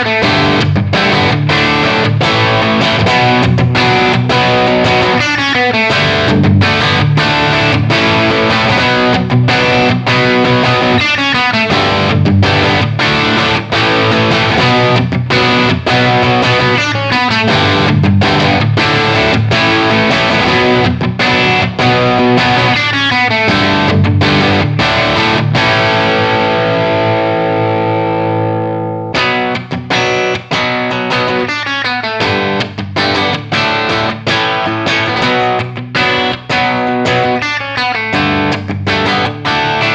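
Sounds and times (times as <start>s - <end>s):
distorted electric guitar strumming: 0.0s - 39.9s.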